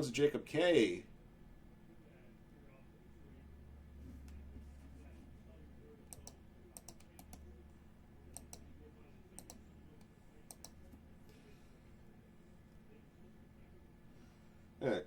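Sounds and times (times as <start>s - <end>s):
low steady hum: 0.0s - 15.0s
faint sharp clicks: 6.1s - 7.4s, 8.3s - 8.7s, 9.4s - 11.0s.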